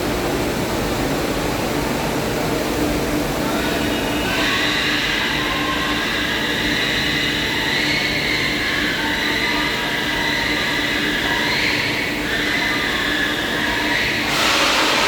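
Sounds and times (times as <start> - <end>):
lathe machine whine: 3.8 - 15.0.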